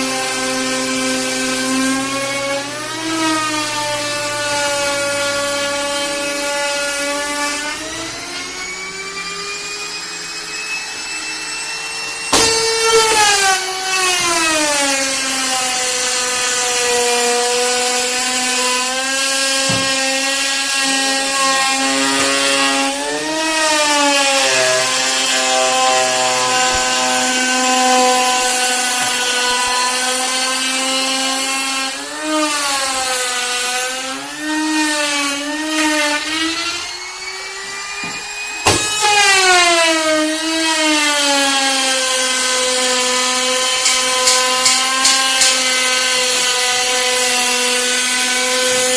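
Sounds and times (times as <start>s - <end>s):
power tool cutting wood: 0.0s - 48.9s
sharp knock: 43.8s - 45.8s.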